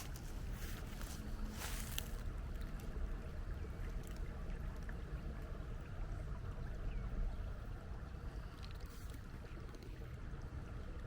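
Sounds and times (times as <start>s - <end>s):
footsteps crunching on leaves: 0.0s - 2.2s.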